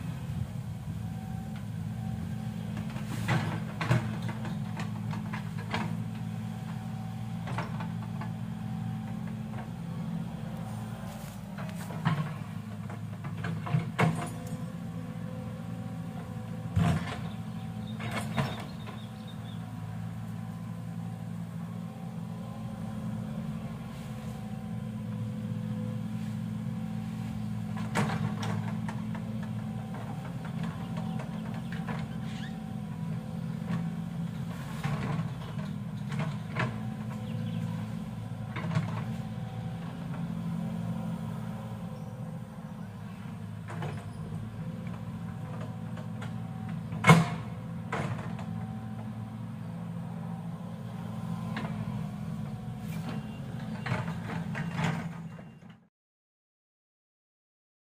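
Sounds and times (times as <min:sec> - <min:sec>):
excavator diesel engine running: 0:00.0 - 0:55.9
machine knocks and clanks: 0:11.6 - 0:14.7, 0:16.3 - 0:19.3, 0:27.6 - 0:32.2, 0:33.6 - 0:40.3.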